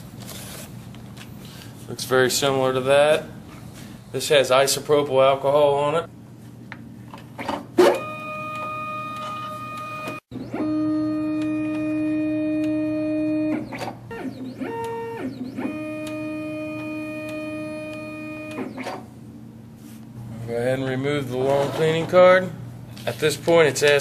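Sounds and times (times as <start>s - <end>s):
card printer motors whining: 7.4s - 19.1s.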